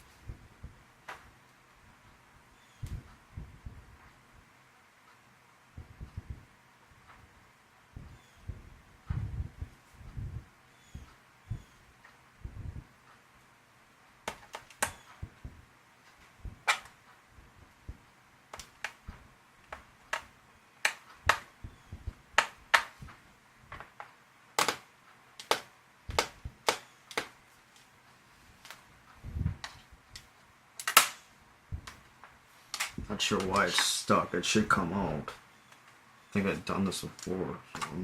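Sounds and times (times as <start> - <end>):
sharp clicks and taps inside laptop: 17.8 - 27.4.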